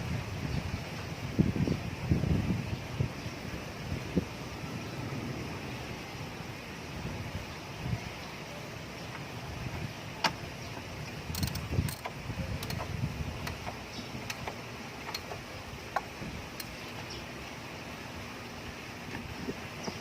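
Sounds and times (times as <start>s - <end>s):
metallic clicks from hand tools: 11.3s - 17.0s.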